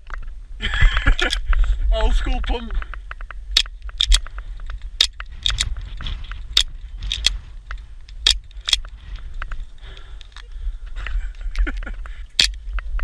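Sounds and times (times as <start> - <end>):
low rumble: 0.0 - 13.0
gas pistol firing clicks: 3.5 - 4.3, 8.2 - 8.9, 12.4 - 12.6.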